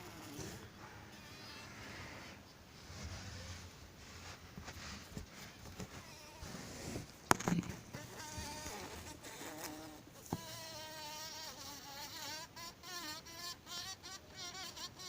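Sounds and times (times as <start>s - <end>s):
bumblebee buzzing: 0.0s - 2.4s, 7.8s - 15.0s.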